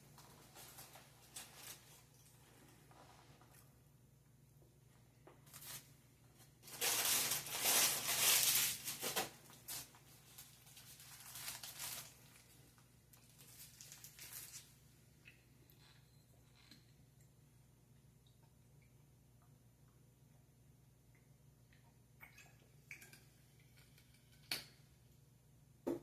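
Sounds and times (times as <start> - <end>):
paper wrapper crinkling and tearing: 5.4 - 5.9, 6.6 - 14.7.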